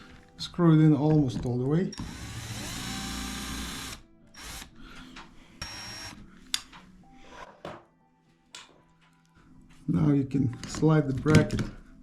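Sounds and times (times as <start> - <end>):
power screwdriver driving screws: 1.9 - 4.7, 5.6 - 6.2.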